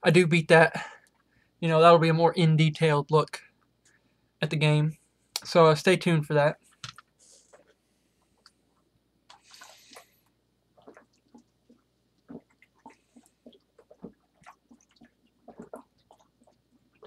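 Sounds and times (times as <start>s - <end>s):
person gulping soda: 9.2s - 17.0s.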